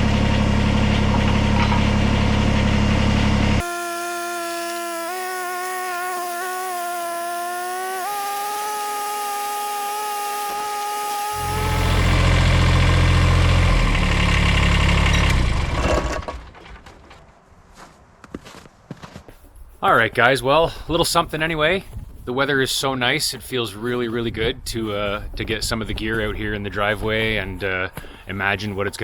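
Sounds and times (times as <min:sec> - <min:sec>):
engine whine and rumble: 0:00.0 - 0:16.5.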